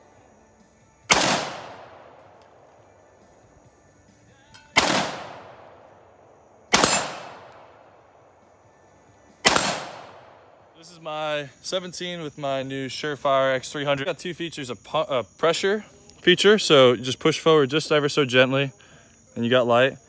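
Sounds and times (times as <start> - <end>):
gunshots with ringing echo: 1.0 - 2.8, 4.7 - 8.6, 9.4 - 10.8.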